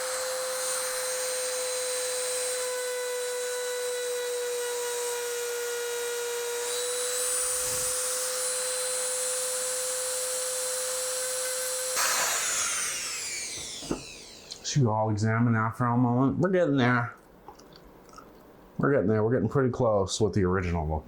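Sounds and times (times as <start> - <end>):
rotary tool whining: 0.0 - 14.7.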